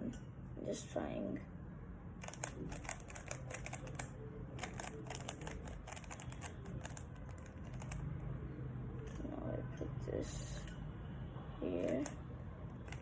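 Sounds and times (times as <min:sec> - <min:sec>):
puzzle cube plastic clicks: 0:02.2 - 0:08.1.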